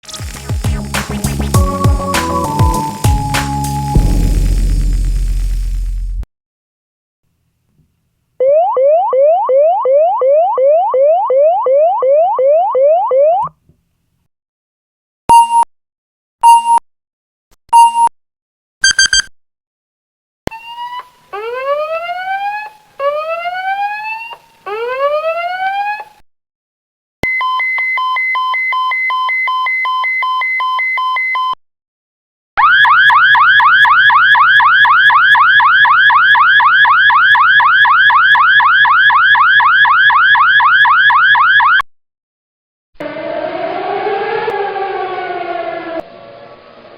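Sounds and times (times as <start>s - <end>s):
fast rising warble alarm: 0.4s - 6.2s, 43.0s - 46.8s
rising siren sweeps: 1.1s - 6.2s, 20.5s - 26.2s, 43.0s - 46.9s
steady buzzing tone: 2.8s - 6.2s
short sharp beeps: 16.4s - 16.8s, 18.8s - 19.3s
slow rising whoops: 43.0s - 46.4s.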